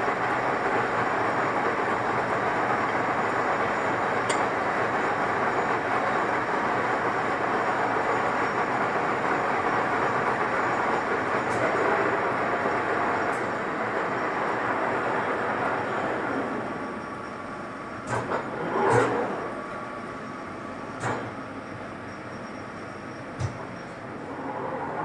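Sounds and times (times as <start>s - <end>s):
lathe whirring rumble: 0.0s - 21.0s, 23.0s - 25.0s.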